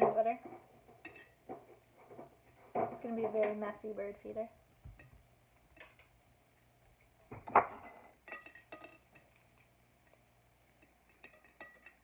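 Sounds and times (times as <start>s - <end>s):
seeds and dish clattering: 0.0s - 3.6s, 7.3s - 12.0s
light clinks of dish: 1.0s - 1.4s, 7.8s - 9.4s, 10.8s - 12.0s.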